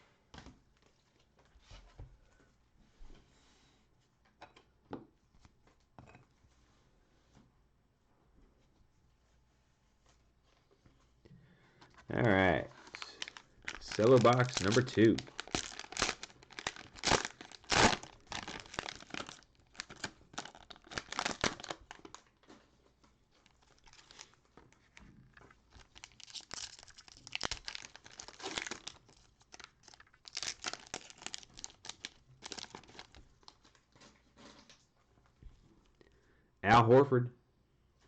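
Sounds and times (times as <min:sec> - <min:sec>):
cellophane wrapper crinkling and tearing: 0:12.1 - 0:22.7, 0:23.4 - 0:34.8.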